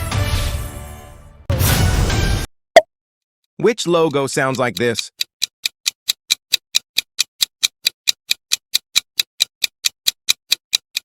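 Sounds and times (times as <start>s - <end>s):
clock-like ticking: 3.6s - 11.0s.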